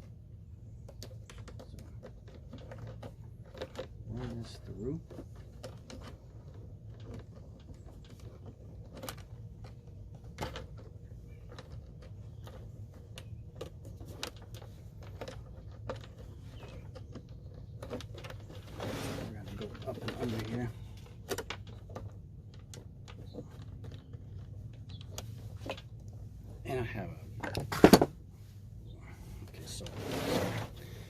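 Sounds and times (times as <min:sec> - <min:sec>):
steady low hum: 0:00.0 - 0:31.0
plastic housing clicks and knocks: 0:27.4 - 0:28.2.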